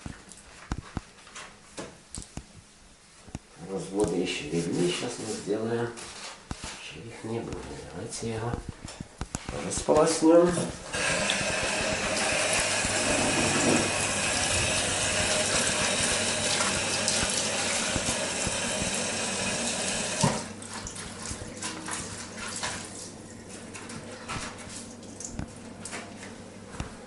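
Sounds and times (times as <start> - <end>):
tap water running into sink: 10.6 - 23.2.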